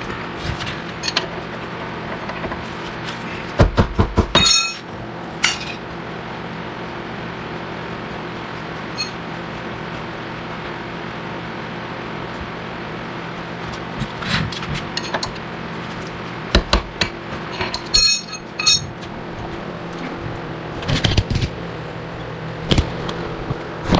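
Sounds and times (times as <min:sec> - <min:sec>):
steady low hum: 0:00.0 - 0:23.9
metal tools clinking on steel: 0:04.4 - 0:05.8, 0:09.0 - 0:09.2, 0:17.6 - 0:19.0
ringing metallic clanks: 0:04.4 - 0:05.8, 0:17.7 - 0:19.0.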